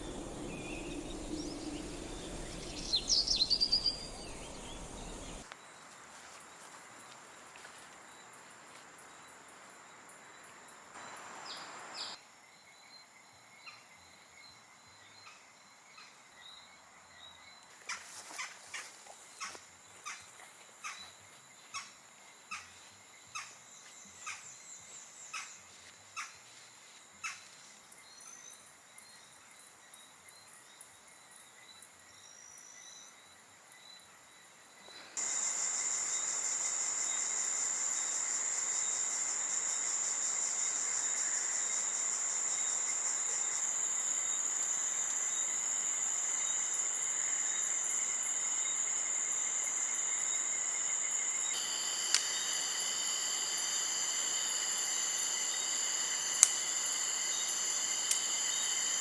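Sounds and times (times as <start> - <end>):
faint bird chirps: 0.0 - 5.8
insects chirping: 0.0 - 59.0.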